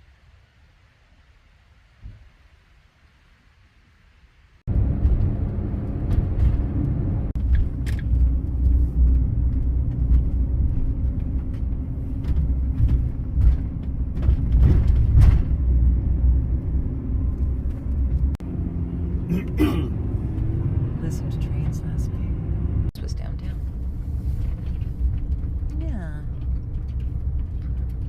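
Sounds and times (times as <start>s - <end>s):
vehicle road and engine rumble: 4.1s - 28.0s
light knocks and rattles: 5.0s - 16.7s, 23.6s - 28.0s.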